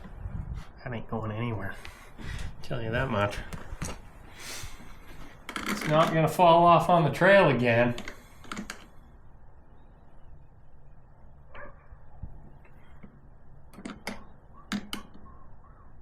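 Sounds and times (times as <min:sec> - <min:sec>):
tools clicking and knocking: 0:08.0 - 0:08.9, 0:12.7 - 0:15.2.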